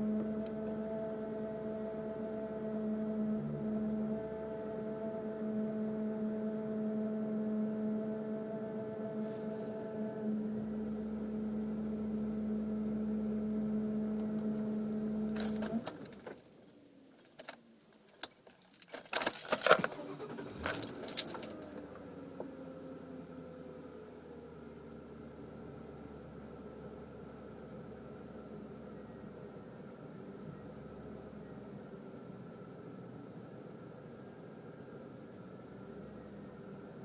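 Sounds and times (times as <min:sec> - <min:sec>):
car engine starting: 0:00.0 - 0:16.8, 0:18.2 - 0:33.0
car engine hum: 0:00.0 - 0:37.0
keys jangling in ignition: 0:15.2 - 0:22.0.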